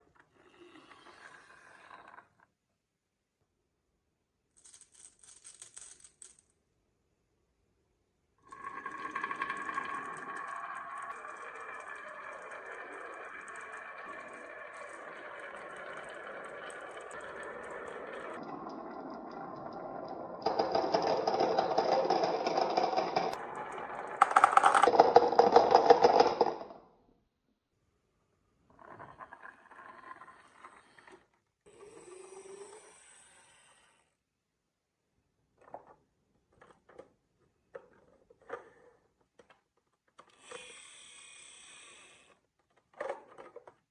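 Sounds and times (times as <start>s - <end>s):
marbles clattering on wooden run: 8.5s - 26.8s.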